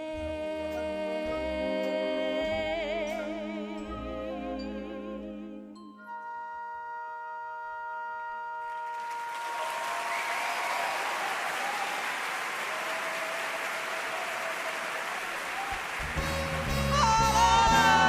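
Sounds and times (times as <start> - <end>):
audience applause: 8.7 - 18.0.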